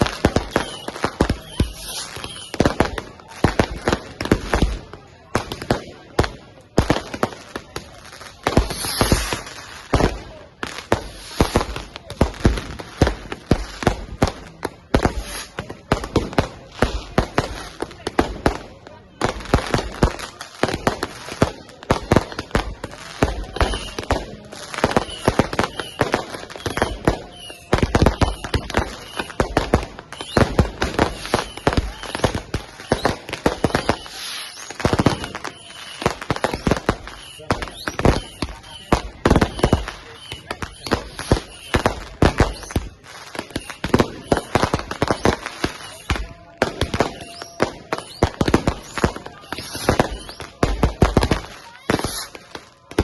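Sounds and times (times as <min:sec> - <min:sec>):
fireworks whistles: 0:00.0 - 0:05.9, 0:06.8 - 0:53.0
fireworks bangs and crackles: 0:00.0 - 0:53.0.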